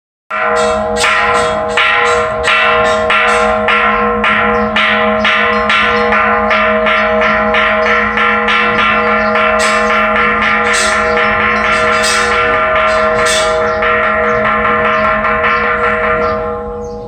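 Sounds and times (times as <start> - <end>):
temple bells ringing: 0.3 - 17.0.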